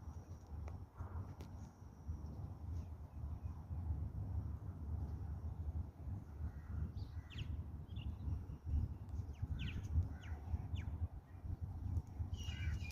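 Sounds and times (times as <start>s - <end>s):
faint bird chirps: 12.3s - 12.9s.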